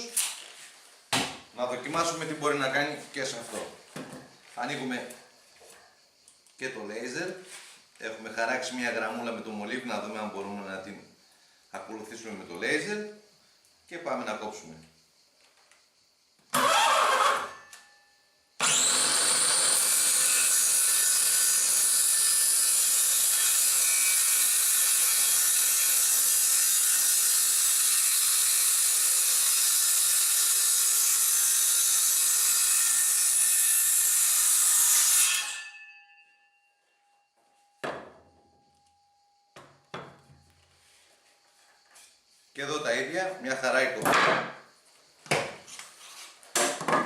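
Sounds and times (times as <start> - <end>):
circular saw cutting wood: 16.6 - 17.6, 18.6 - 35.8.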